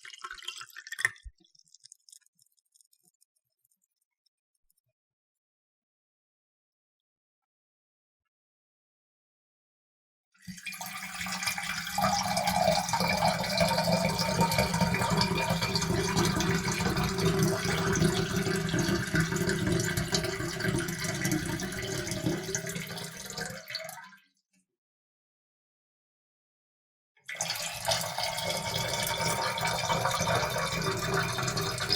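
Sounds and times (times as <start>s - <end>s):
water pouring into a cup: 0.0s - 3.2s, 10.4s - 24.2s, 27.3s - 31.9s.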